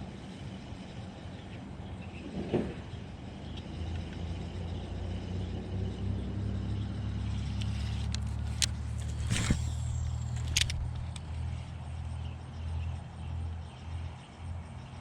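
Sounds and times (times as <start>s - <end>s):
low engine hum: 0.0s - 15.0s
sharp clicks: 7.3s - 11.6s.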